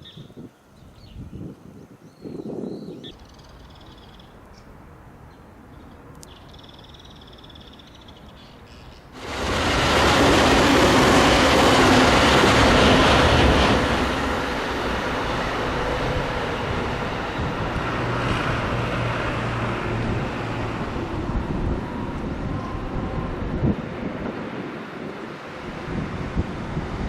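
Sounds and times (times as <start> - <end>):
freight train passing on rails: 8.2 - 27.0.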